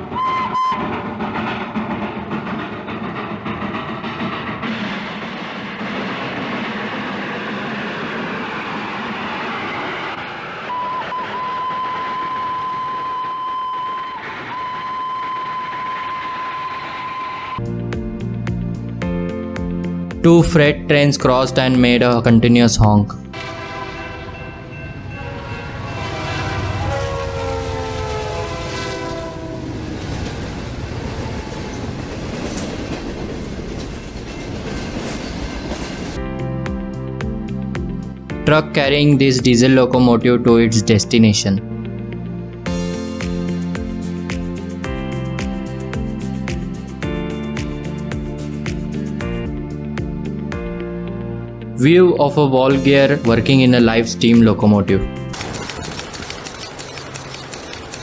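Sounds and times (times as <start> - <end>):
train horn: 0.0 - 1.1, 10.6 - 17.6, 23.4 - 30.4
train running: 0.0 - 22.7, 23.3 - 38.2, 42.7 - 50.1, 52.7 - 58.0.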